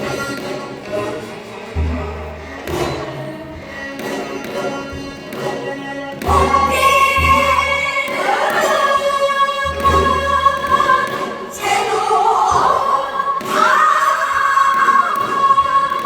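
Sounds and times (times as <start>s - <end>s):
low instrumental accompaniment: 0.0s - 11.6s
woman singing with vibrato: 6.2s - 16.0s.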